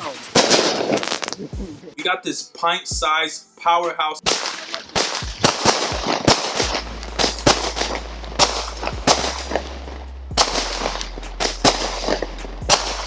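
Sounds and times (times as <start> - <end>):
firework shots banging: 0.0 - 1.4, 4.3 - 13.0
firework crackling: 0.0 - 1.5, 4.3 - 13.0.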